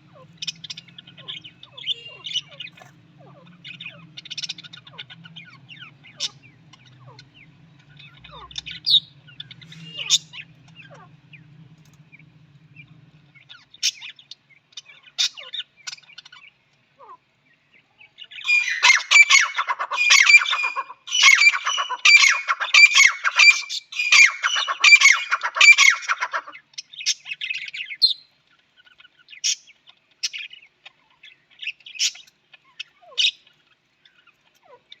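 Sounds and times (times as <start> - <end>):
harsh squawking bird calls: 0.0 - 35.0
short bird chirps: 8.0 - 11.0.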